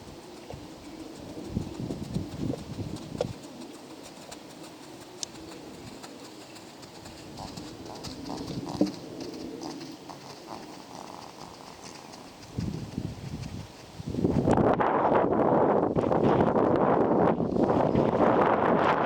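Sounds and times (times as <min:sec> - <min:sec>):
horse hooves clip-clopping: 0:00.0 - 0:15.0.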